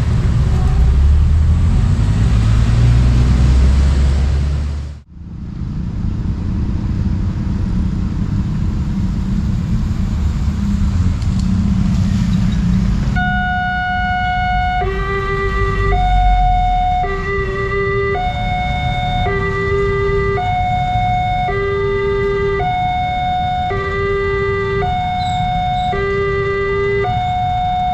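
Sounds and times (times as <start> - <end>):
traffic rumble: 0.0 - 27.9
level crossing warning siren: 13.1 - 27.9.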